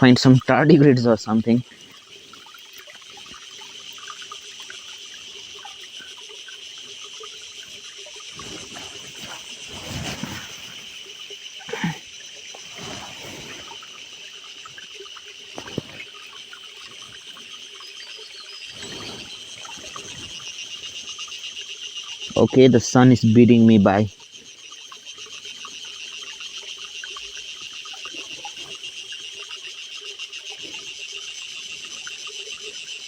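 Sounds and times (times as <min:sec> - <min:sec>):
water pouring and splashing: 0:00.0 - 0:22.6
creek water trickling: 0:00.0 - 0:33.0
insects chirring: 0:00.0 - 0:33.0.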